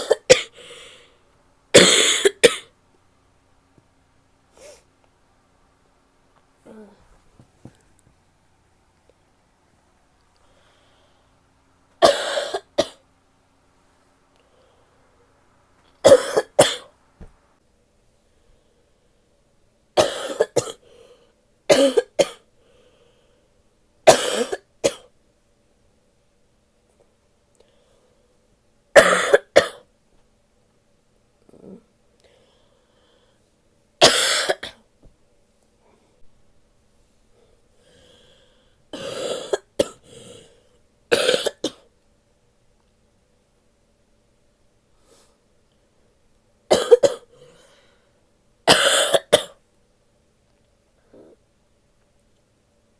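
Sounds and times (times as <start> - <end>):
woman coughing: 0.0 - 0.6, 1.8 - 2.7, 12.0 - 13.0, 16.0 - 16.9, 20.0 - 20.8, 21.7 - 22.4, 24.1 - 25.1, 29.0 - 29.8, 34.0 - 34.8, 39.0 - 40.0, 41.1 - 41.8, 46.7 - 47.3, 48.7 - 49.6.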